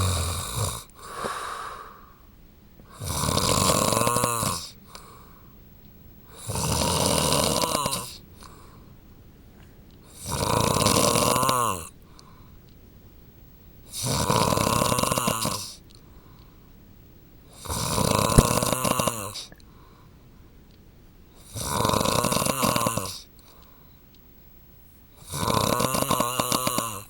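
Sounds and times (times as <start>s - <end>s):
man snoring: 0.0s - 2.1s, 2.9s - 4.8s, 6.3s - 8.2s, 10.1s - 12.0s, 13.9s - 15.8s, 17.5s - 19.6s, 21.4s - 23.3s, 25.2s - 27.0s.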